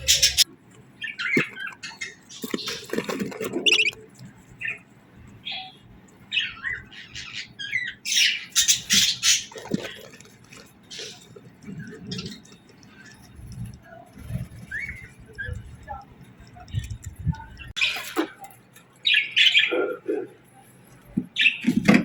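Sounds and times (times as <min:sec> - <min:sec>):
harsh bird calls: 0:00.0 - 0:04.0
small birds chirping: 0:00.0 - 0:21.8.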